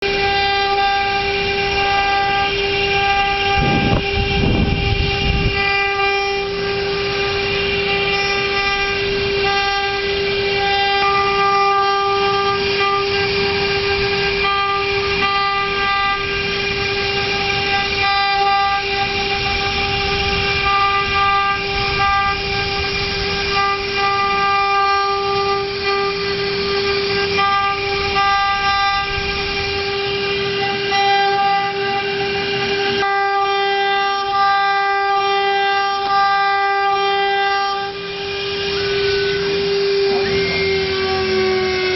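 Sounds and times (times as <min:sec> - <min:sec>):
router spindle whine: 0:00.0 - 0:41.9
router cutting wood: 0:37.4 - 0:41.9.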